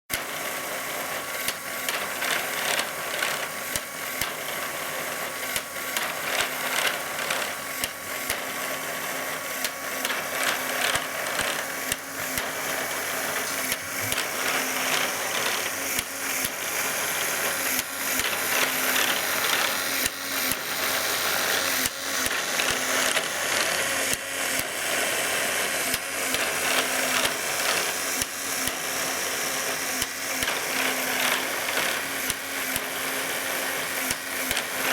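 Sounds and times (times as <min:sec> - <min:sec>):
faint motor whine: 0:00.2 - 0:34.9
plastic gears whirring and clicking: 0:09.6 - 0:24.8, 0:25.4 - 0:34.9.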